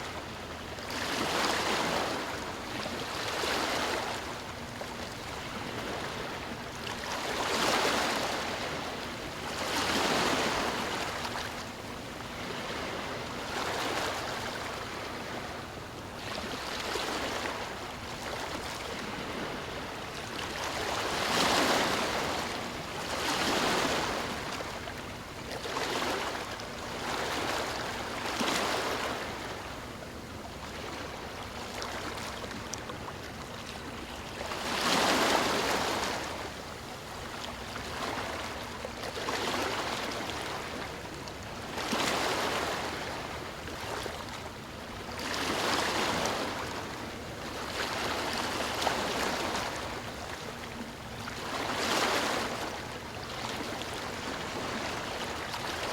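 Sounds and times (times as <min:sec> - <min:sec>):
sea waves washing on shore: 0:00.0 - 0:55.9.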